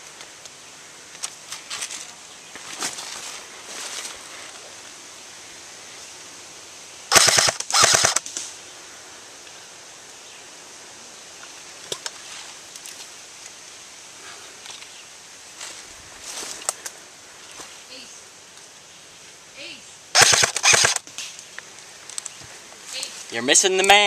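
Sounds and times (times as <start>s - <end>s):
rustling of movement: 0.0s - 24.0s
airsoft gun full-auto bursts: 7.1s - 8.3s, 20.1s - 21.1s.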